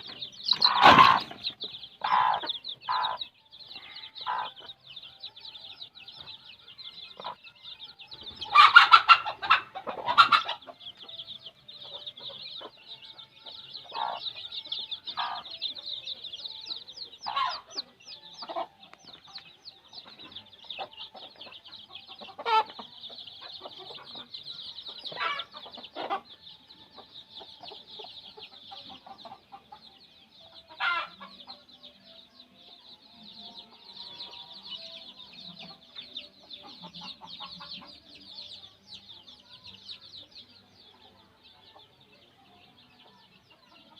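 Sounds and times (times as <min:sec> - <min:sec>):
chicks peeping: 0:00.0 - 0:43.9
adult chicken calls: 0:00.5 - 0:01.4, 0:22.4 - 0:22.7.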